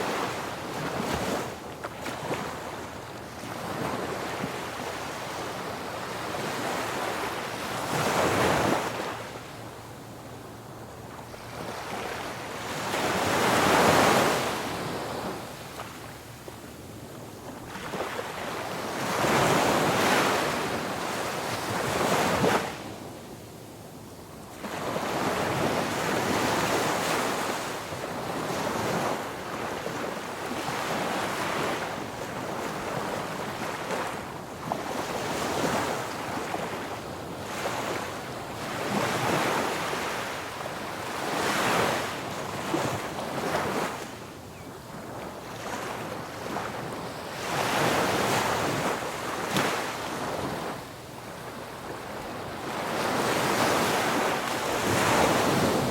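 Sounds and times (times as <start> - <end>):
wind on microphone: 44.6 - 55.9.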